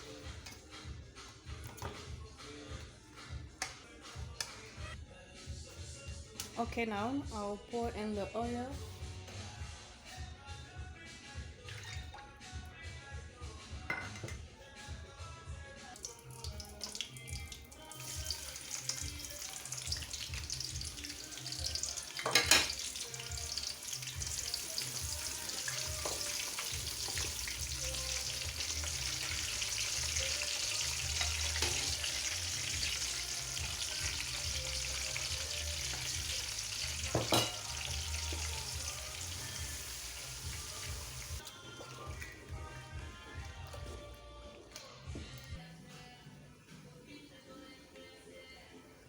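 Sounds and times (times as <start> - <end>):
oil sizzling in a pot: 16.0 - 42.4.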